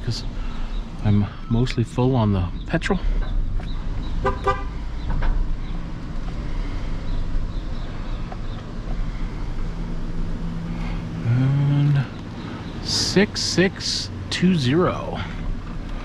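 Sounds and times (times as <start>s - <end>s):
truck engine idling: 0.0s - 16.0s
low horn-like hum: 4.2s - 5.0s.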